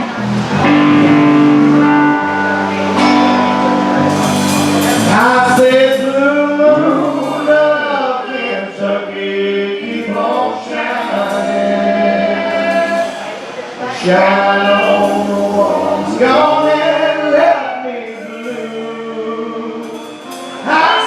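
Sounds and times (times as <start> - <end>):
live band playing: 0.0 - 21.0
men singing in harmony: 4.3 - 21.0.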